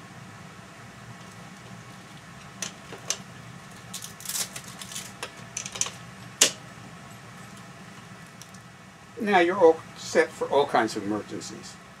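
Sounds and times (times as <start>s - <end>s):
duct tape tearing: 3.7s - 5.8s.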